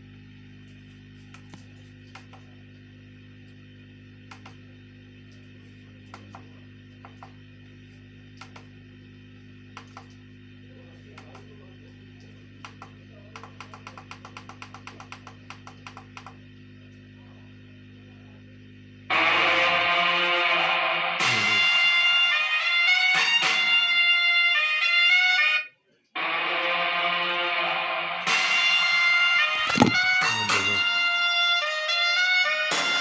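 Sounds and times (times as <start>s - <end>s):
low electrical hum: 0.0s - 20.4s
clicks: 4.3s - 4.6s, 6.1s - 7.4s, 8.3s - 8.8s, 12.6s - 16.4s
guitar music from tv speakers: 26.2s - 33.0s.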